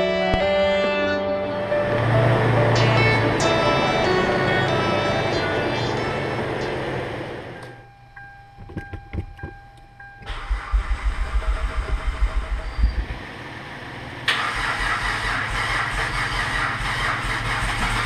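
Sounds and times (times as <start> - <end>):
music: 0.0 - 10.3
steady tone: 0.0 - 13.2
car engine cranking and starting: 1.7 - 7.7, 10.2 - 18.0
car warning chime: 2.4 - 12.0.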